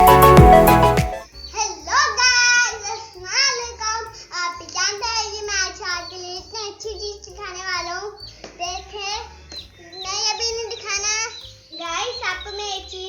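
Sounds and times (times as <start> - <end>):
low repeating beat: 0.0 - 1.2.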